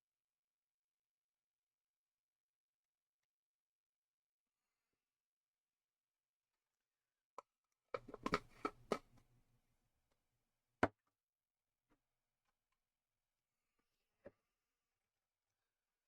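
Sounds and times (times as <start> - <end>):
laptop parts clicking and knocking: 8.0 - 9.2.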